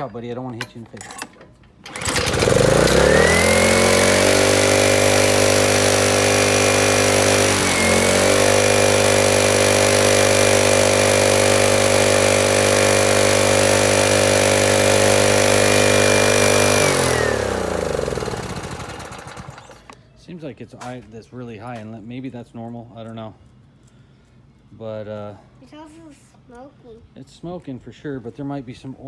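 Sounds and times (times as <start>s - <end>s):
small engine revving: 1.9s - 20.0s.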